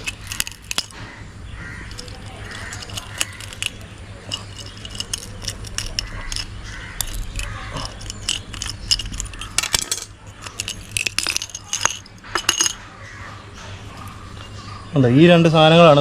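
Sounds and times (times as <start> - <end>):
broken glass and metal clinking: 0.0 - 1.0, 1.8 - 12.9.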